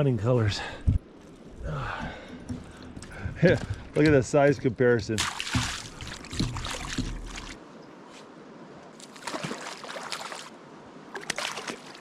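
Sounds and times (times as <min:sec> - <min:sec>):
water sloshing and trickling: 0:01.2 - 0:12.0
water splashes: 0:02.3 - 0:07.6, 0:08.9 - 0:12.0.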